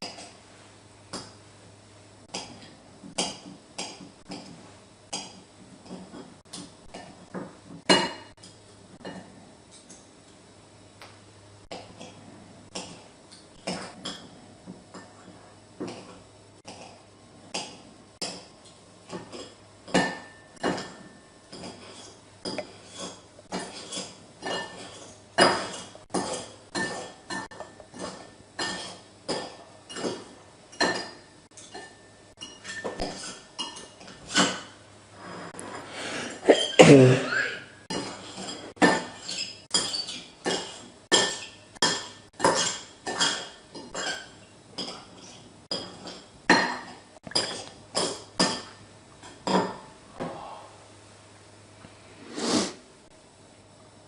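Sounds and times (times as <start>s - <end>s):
dishes and cutlery clinking: 19.1s - 34.8s, 37.9s - 49.8s
person burping: 36.2s - 37.8s.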